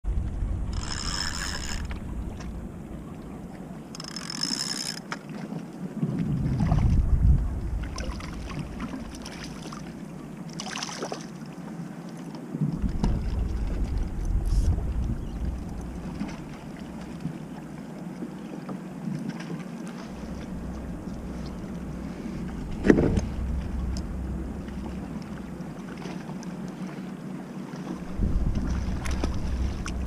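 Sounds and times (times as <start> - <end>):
wind rumbling on microphone: 0.0 - 4.9, 5.8 - 10.5, 12.5 - 30.0
water splashing: 0.7 - 11.4, 12.6 - 30.0.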